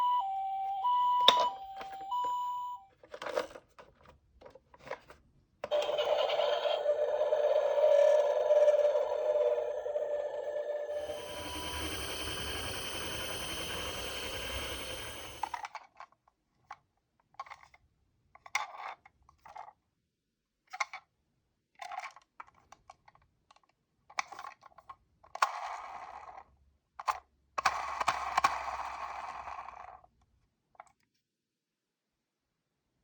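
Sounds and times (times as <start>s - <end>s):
toy vehicle running on track: 5.7s - 15.7s.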